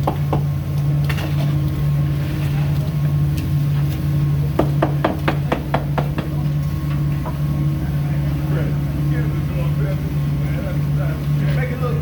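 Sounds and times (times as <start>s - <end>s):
diesel engine running: 0.0s - 12.0s
sharp knocks: 4.6s - 6.4s.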